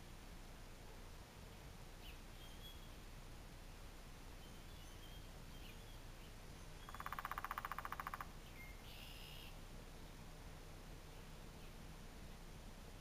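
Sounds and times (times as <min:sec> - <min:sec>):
bird call: 0:06.7 - 0:09.6
woodpecker drumming: 0:06.8 - 0:08.4.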